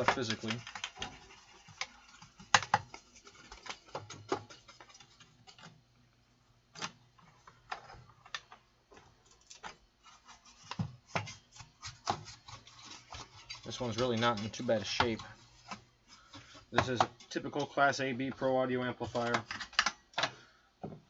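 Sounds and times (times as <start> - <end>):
faint steady hum: 0.0 - 21.0
brush scrubbing inside metal chassis: 11.4 - 15.8.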